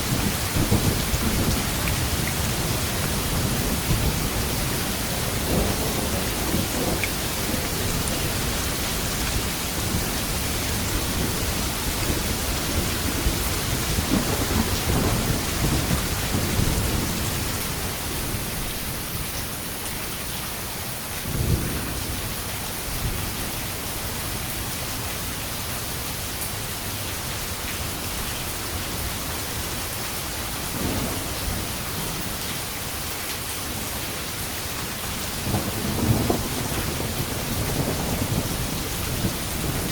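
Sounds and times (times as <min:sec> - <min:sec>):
thunder clap: 0:00.0 - 0:18.4, 0:35.4 - 0:39.9
thunder rumbling: 0:00.0 - 0:19.3, 0:35.0 - 0:39.9
heavy rain: 0:00.0 - 0:39.9.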